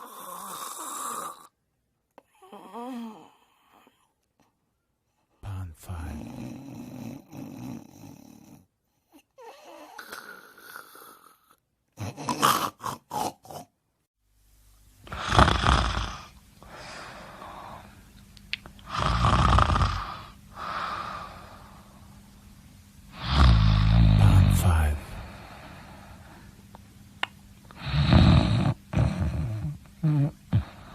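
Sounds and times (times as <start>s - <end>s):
person snoring: 0.0s - 1.5s, 2.4s - 4.0s, 5.4s - 13.7s, 15.1s - 18.0s, 18.8s - 22.1s, 23.1s - 26.5s, 27.7s - 30.9s
quiet breathing: 15.0s - 18.2s, 18.8s - 26.9s, 27.7s - 30.9s.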